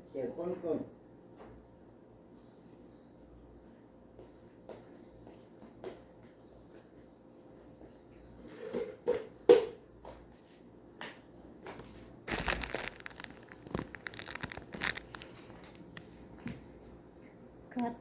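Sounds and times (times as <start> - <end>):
crinkling and rustling: 11.7 - 16.3.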